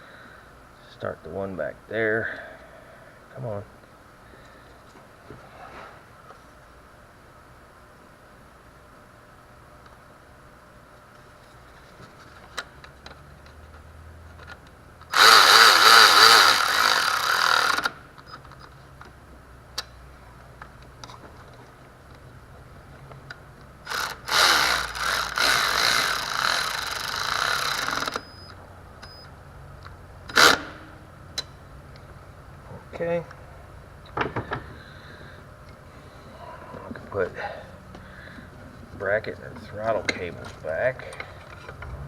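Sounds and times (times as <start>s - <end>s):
cordless power tool running nuts: 15.1s - 18.0s, 23.8s - 28.4s, 30.3s - 30.8s.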